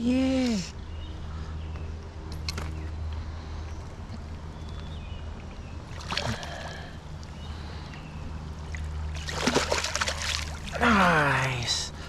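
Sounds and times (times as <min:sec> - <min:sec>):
fish splashing water: 0:05.9 - 0:07.4, 0:08.6 - 0:11.2
stream rushing: 0:08.7 - 0:11.8.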